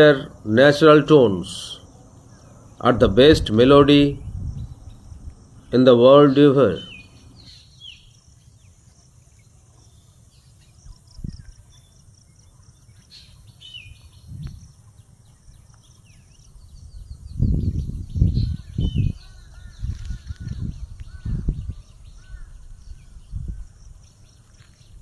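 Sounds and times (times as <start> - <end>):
small birds chirping: 0.0 - 25.0
low rumbling gusts: 2.6 - 5.8, 14.1 - 15.6, 16.4 - 24.0.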